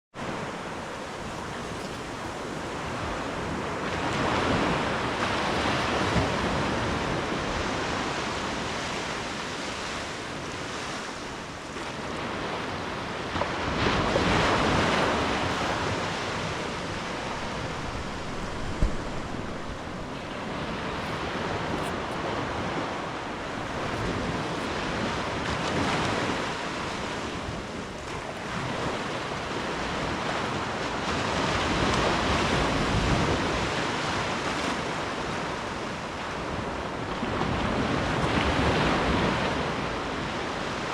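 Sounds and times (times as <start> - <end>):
ocean waves breaking: 0.2 - 40.9
brief thump: 17.8 - 19.9.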